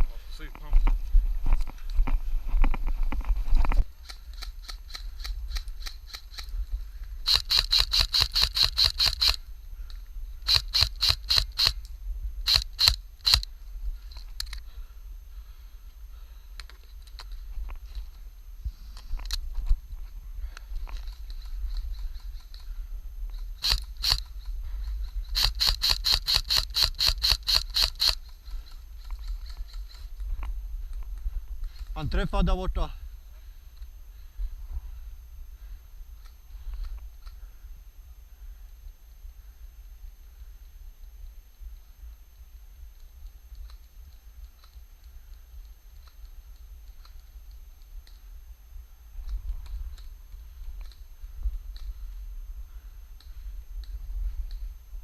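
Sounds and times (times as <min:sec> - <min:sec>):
steady low rumble: 0:00.0 - 0:42.8
airsoft gun shots: 0:07.3 - 0:09.4, 0:10.4 - 0:11.8, 0:12.5 - 0:13.5, 0:23.6 - 0:24.3, 0:25.3 - 0:28.2.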